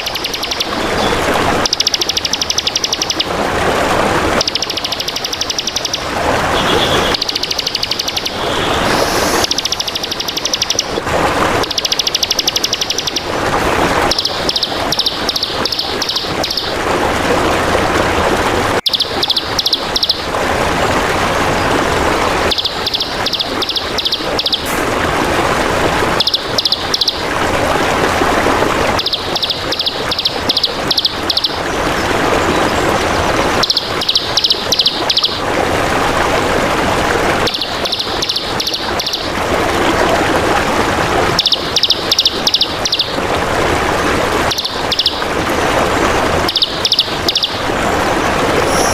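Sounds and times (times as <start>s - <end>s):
songbird chattering trill: 0.0s - 3.3s, 4.4s - 6.0s, 6.7s - 10.9s, 11.6s - 13.2s, 14.1s - 16.7s, 18.8s - 20.2s, 22.5s - 24.7s, 26.2s - 27.2s, 29.0s - 31.6s, 33.6s - 35.4s, 37.5s - 39.3s, 41.4s - 43.2s, 44.5s - 45.2s, 46.5s - 47.6s, 48.6s - 48.9s
trickling water: 0.0s - 48.9s.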